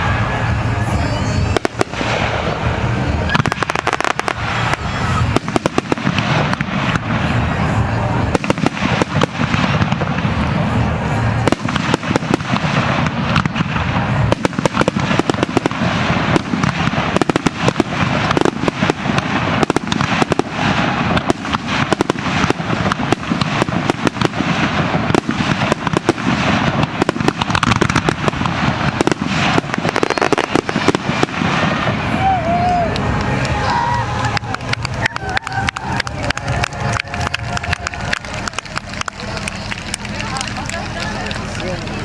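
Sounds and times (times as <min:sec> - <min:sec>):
fireworks bursting: 0:00.0 - 0:42.0.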